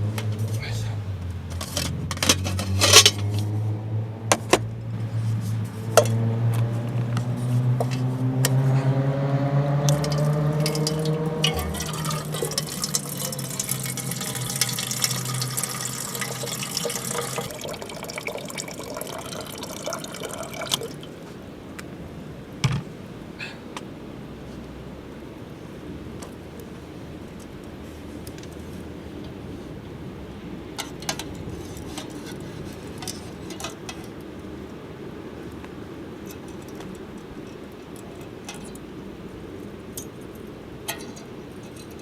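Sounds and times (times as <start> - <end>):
water pouring into container: 10.0 - 21.2.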